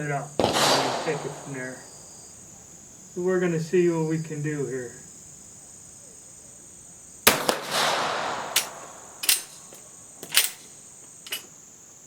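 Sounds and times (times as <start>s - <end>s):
crickets chirping: 0.0s - 12.0s
rifle shot with echo: 0.4s - 2.6s, 7.3s - 9.6s.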